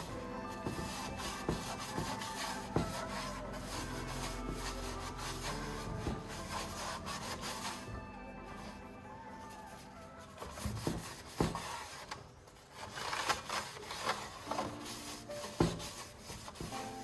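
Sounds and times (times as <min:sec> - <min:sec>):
scraping on hard surface: 0:00.0 - 0:08.9
faint background music: 0:00.0 - 0:17.0.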